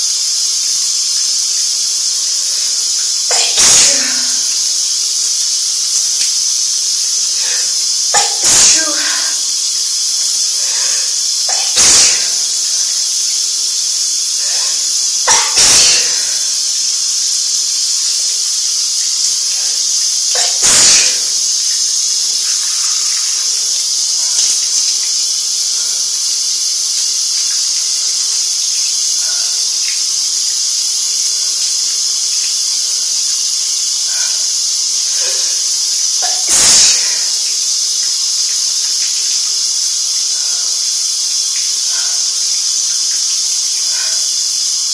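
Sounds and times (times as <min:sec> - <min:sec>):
shower water running: 0:00.0 - 0:44.9
person sneezing: 0:03.3 - 0:04.7, 0:07.4 - 0:09.6, 0:10.6 - 0:12.9, 0:14.4 - 0:16.6, 0:20.3 - 0:21.5, 0:36.2 - 0:37.5.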